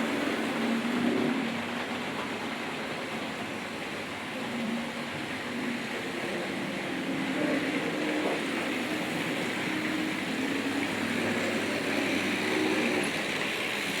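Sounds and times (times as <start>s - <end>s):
model train motors humming: 0.0s - 14.0s
wheels rattling on track: 0.0s - 14.0s.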